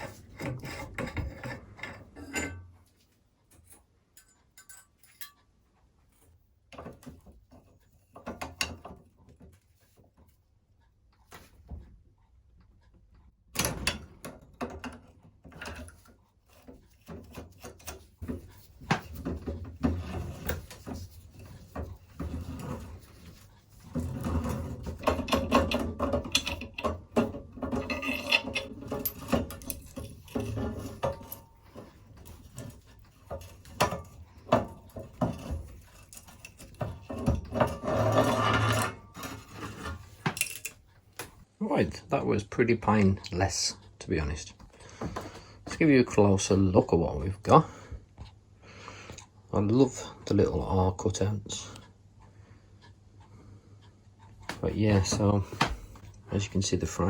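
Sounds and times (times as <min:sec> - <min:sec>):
tools handling bicycle parts: 0:00.0 - 0:05.5, 0:13.9 - 0:41.4, 0:54.5 - 0:56.2.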